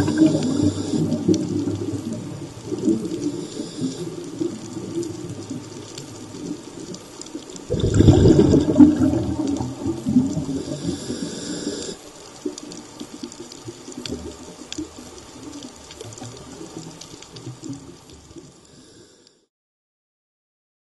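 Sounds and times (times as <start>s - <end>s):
diver exhaling bubbles underwater: 0.0s - 5.5s, 7.7s - 12.0s
faint clicks: 0.0s - 7.7s, 12.0s - 18.6s
steady water hiss: 0.0s - 19.5s.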